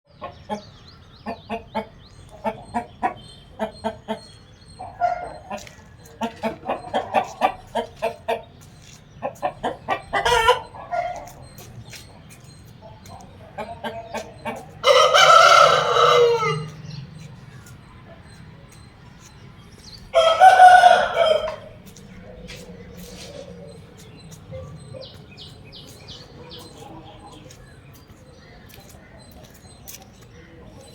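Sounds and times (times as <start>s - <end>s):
chickens clucking: 0.1s - 30.9s
rooster crowing: 14.8s - 16.9s, 20.1s - 21.8s.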